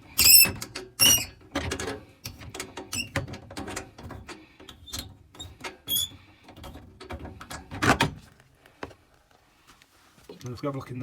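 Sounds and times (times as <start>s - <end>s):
short squeaks: 0.1s - 1.4s, 4.8s - 6.2s.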